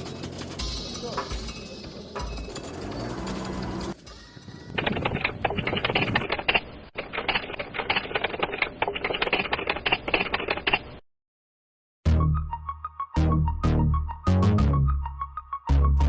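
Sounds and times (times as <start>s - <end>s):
rapid irregular clicking: 4.8s - 11.0s.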